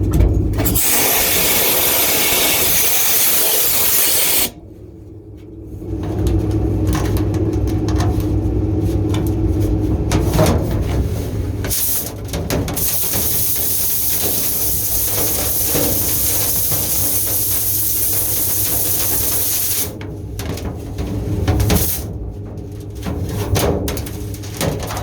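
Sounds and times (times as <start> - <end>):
air hissing: 0.6 - 4.6, 12.8 - 19.9
low steady hum: 4.3 - 11.7.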